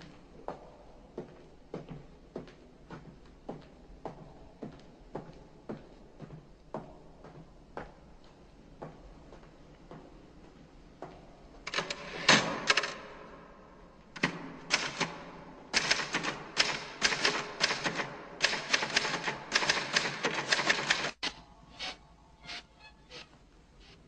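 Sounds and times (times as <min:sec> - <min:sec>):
typewriter keystrokes: 0:11.7 - 0:13.0, 0:14.2 - 0:21.2.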